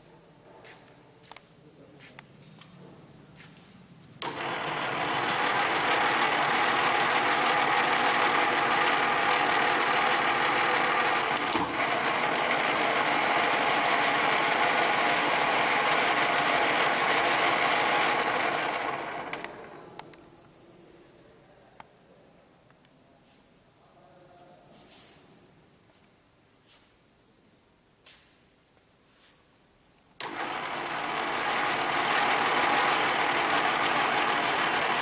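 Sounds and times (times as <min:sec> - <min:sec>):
shop machine motor running: 0:04.2 - 0:20.3, 0:30.2 - 0:35.0.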